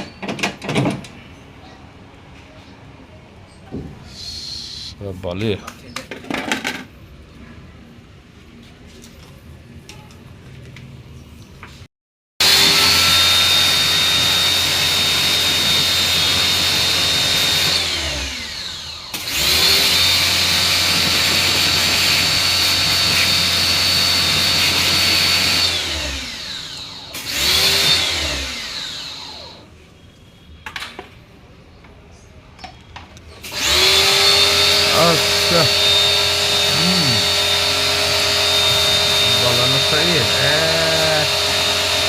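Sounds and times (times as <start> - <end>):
electric motor whining: 12.4 - 29.6, 33.4 - 42.0.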